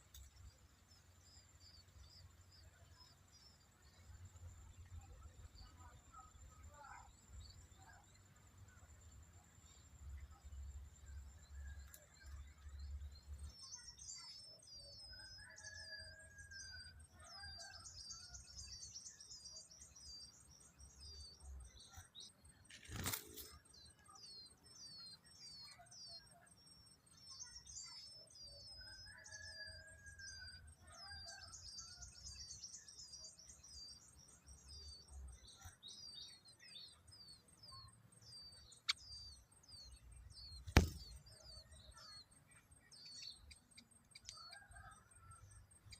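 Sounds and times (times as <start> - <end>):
birds chirping rapidly: 11.7 - 44.9
sharp thump: 40.7 - 41.2.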